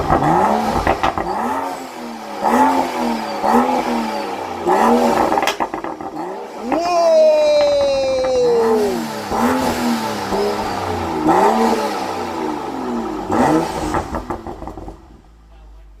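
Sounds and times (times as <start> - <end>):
exhaust crackles and pops: 0.0 - 1.4, 5.1 - 6.3, 13.7 - 15.3
car engine revving: 0.0 - 16.0.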